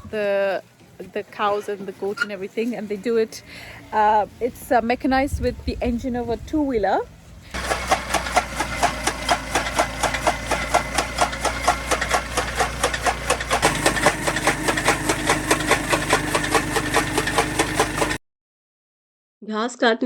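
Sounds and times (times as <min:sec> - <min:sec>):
engine humming: 0:00.0 - 0:18.2
fodder cutter rhythmic clacking: 0:07.6 - 0:18.2.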